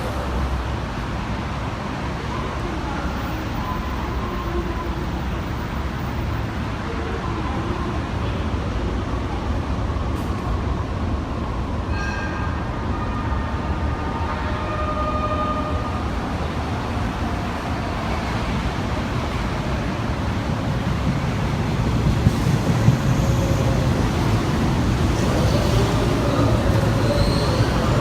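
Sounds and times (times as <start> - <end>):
train wheels rumbling on track: 0.0 - 28.0
high squealing brakes: 11.9 - 13.4, 22.3 - 28.0.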